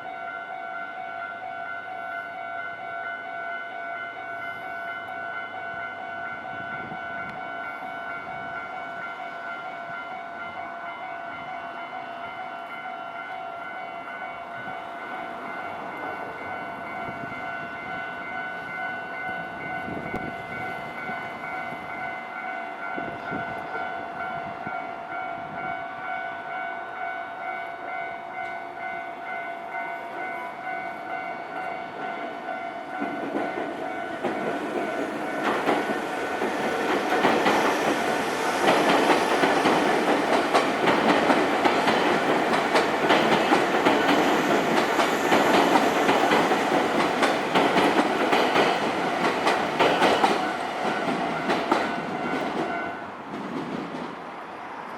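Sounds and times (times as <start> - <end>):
train wheels clattering on rails: 30.0 - 54.2.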